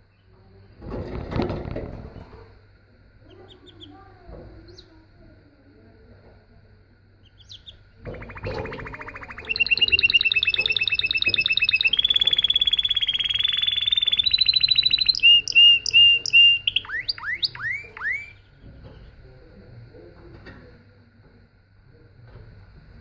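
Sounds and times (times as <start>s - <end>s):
canary singing trills and whistles: 7.2s - 18.5s.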